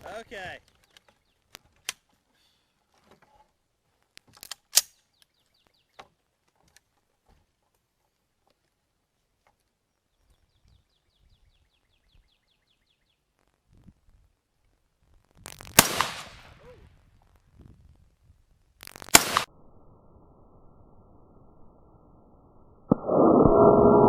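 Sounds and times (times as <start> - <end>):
rifle shots with echo: 15.8 - 16.5, 19.1 - 19.5.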